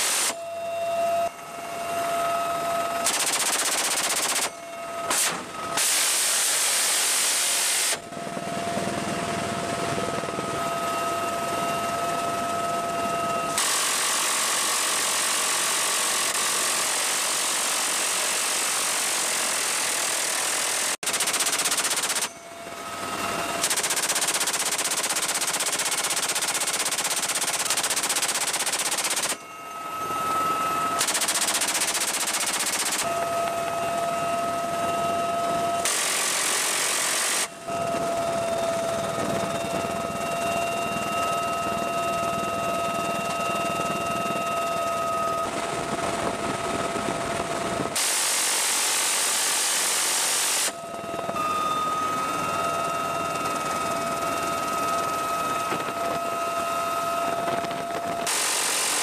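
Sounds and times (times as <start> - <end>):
helicopter whine: 0.0 - 59.0
machine guns firing bursts: 3.1 - 4.5, 20.5 - 22.3, 23.6 - 29.4, 31.0 - 33.0.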